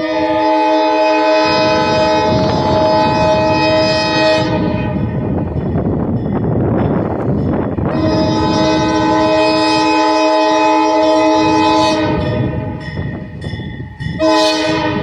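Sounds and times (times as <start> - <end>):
locomotive air horn: 0.0 - 5.3, 7.8 - 12.8, 14.2 - 15.0
train rumbling and clattering: 0.0 - 15.0.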